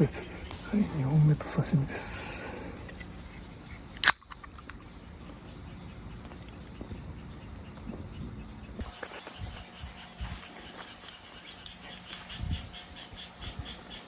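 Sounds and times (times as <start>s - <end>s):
faint outdoor ambience: 0.0s - 14.0s
sharp crack: 4.0s - 4.9s.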